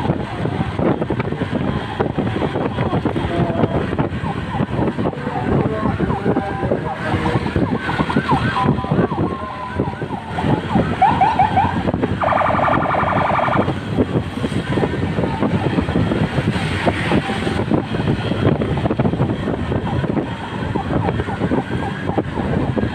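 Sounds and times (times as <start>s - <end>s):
road and engine noise: 0.0s - 22.9s
police siren yelping and warbling: 1.6s - 13.8s, 19.6s - 22.9s.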